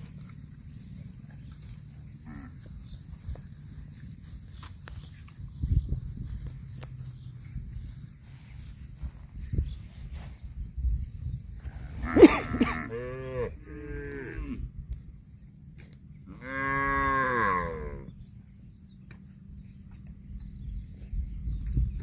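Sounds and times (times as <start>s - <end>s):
cow mooing: 11.9s - 14.6s, 16.3s - 18.1s.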